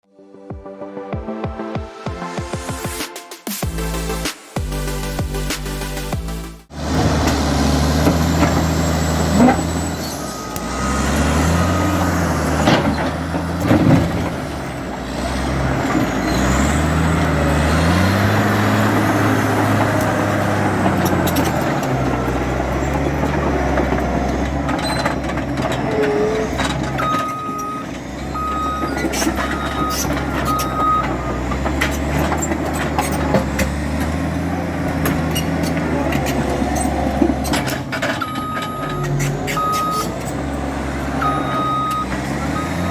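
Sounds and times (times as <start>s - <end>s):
bulldozer diesel engine revving: 6.3s - 42.9s
reversing alarm beeping: 8.8s - 12.4s, 27.0s - 31.6s, 38.1s - 40.4s, 41.1s - 42.9s.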